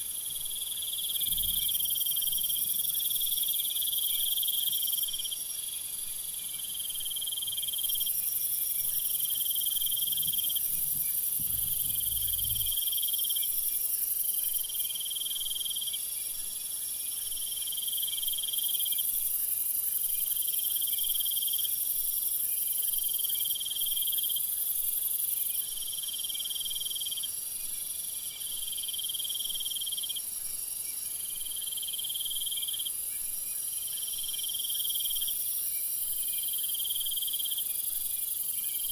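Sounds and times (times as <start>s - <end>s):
high insect hiss: 0.0s - 38.9s
crickets trilling: 0.2s - 5.6s, 6.6s - 15.9s.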